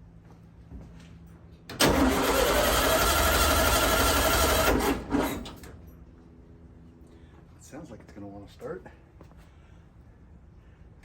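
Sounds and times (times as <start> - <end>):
car starter cranking engine: 1.7 - 5.8.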